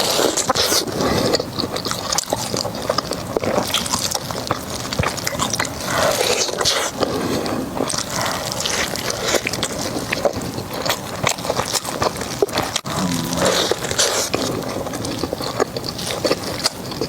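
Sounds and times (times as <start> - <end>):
wet chewing and mouth smacking: 0.0 - 17.0.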